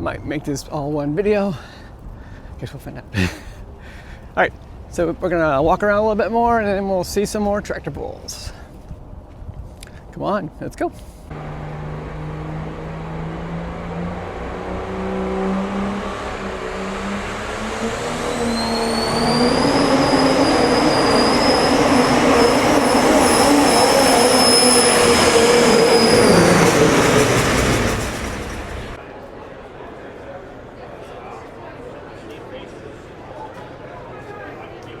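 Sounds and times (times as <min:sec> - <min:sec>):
tractor engine running hard: 0:11.3 - 0:29.0
high whistle: 0:12.9 - 0:28.8.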